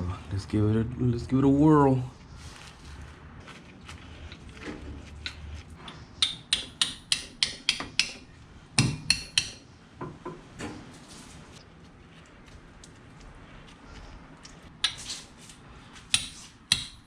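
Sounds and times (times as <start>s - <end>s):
hammer striking metal tool: 6.2s - 9.7s, 16.1s - 17.0s.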